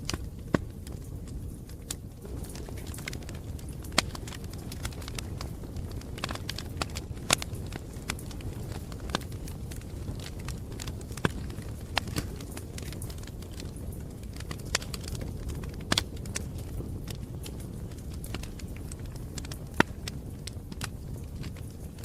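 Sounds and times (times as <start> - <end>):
campfire crackling: 0.0 - 22.0
fire popping: 0.0 - 22.0.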